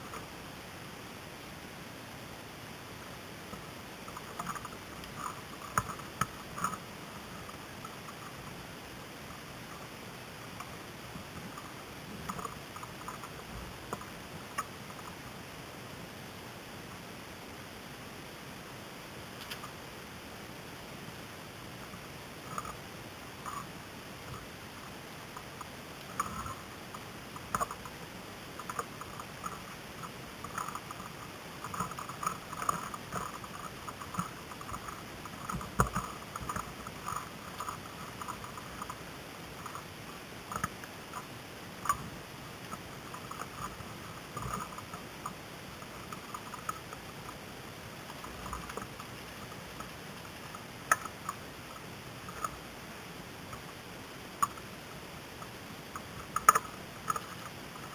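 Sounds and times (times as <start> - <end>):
light clicks and taps: 19.4 - 19.8, 25.3 - 28.0, 28.6 - 39.0, 48.0 - 52.6, 55.4 - 57.9.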